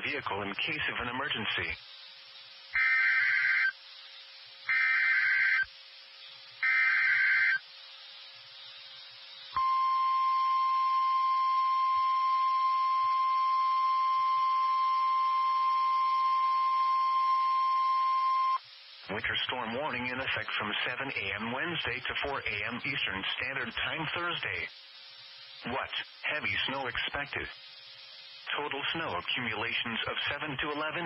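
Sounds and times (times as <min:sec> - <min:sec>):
screechy digital data bursts: 0:00.0 - 0:31.0
steady single-pitch alarm tone: 0:02.7 - 0:03.8, 0:04.6 - 0:05.9, 0:06.5 - 0:07.7, 0:09.0 - 0:18.7.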